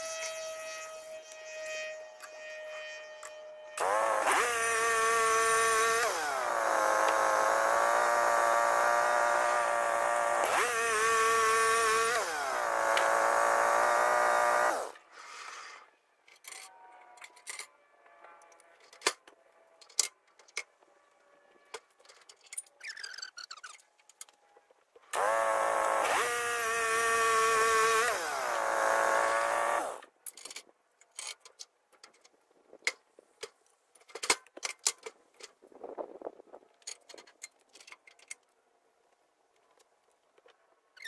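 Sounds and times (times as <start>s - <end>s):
sawmill motor running: 3.8s - 15.1s, 25.1s - 30.1s.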